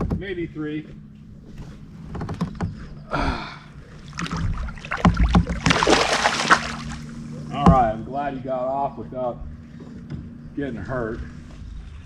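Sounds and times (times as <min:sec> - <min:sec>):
water sloshing around kayak: 0:03.7 - 0:08.0
knocks on kayak hull: 0:04.9 - 0:05.9.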